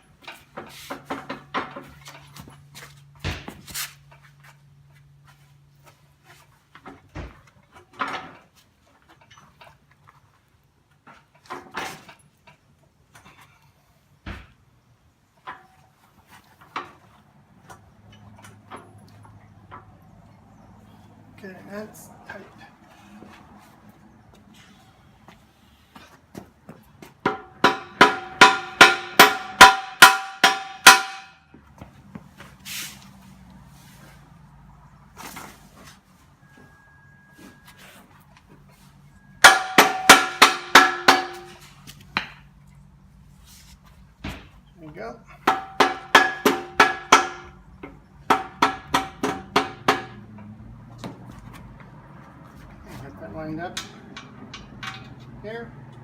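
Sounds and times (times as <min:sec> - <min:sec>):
hammer striking steel: 0:27.2 - 0:31.5, 0:39.4 - 0:42.4, 0:45.4 - 0:50.3, 0:53.7 - 0:55.3
sharp metal clicks and knocks: 0:53.6 - 0:56.0.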